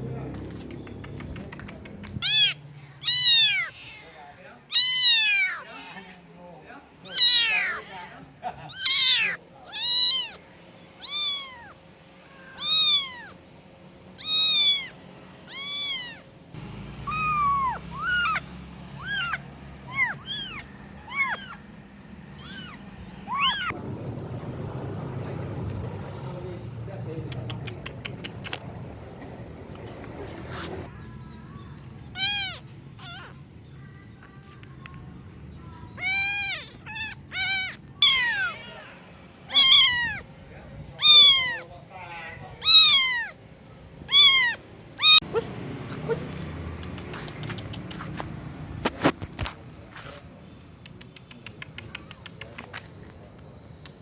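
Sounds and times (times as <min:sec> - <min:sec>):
kitten meowing: 0:02.2 - 0:04.0, 0:04.7 - 0:05.7, 0:07.0 - 0:08.1, 0:08.7 - 0:10.4, 0:11.0 - 0:11.8, 0:12.4 - 0:13.4, 0:14.2 - 0:16.2, 0:17.0 - 0:18.4, 0:19.0 - 0:21.6, 0:22.4 - 0:23.8, 0:32.1 - 0:33.4, 0:35.8 - 0:38.9, 0:39.5 - 0:40.3, 0:40.9 - 0:41.7, 0:42.6 - 0:43.4, 0:44.0 - 0:45.4.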